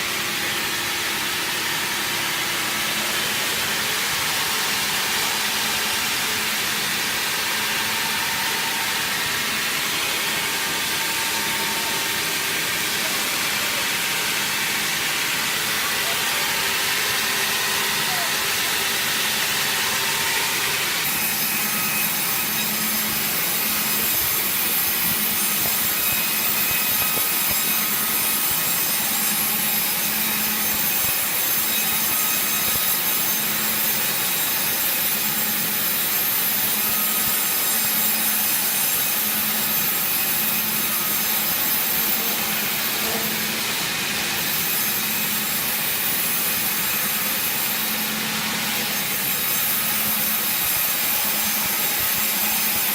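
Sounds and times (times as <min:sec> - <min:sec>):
saw cutting through wood: 0:00.0 - 0:52.9.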